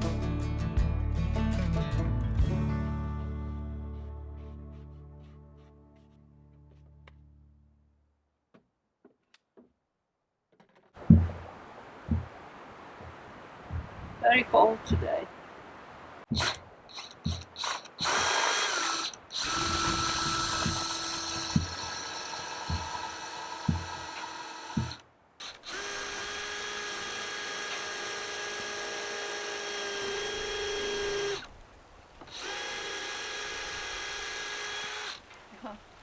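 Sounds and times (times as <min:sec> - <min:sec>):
knocks: 0:10.5 - 0:11.5, 0:12.1 - 0:12.3, 0:16.3 - 0:17.6, 0:19.7 - 0:25.0
power drill motor whine: 0:16.4 - 0:31.5, 0:32.3 - 0:35.2.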